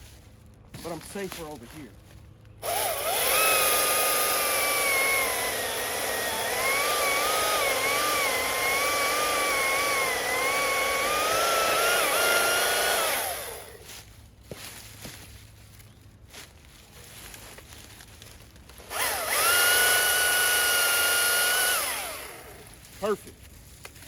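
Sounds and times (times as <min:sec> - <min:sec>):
chainsaw cutting through log: 0:02.6 - 0:13.8, 0:18.8 - 0:22.8.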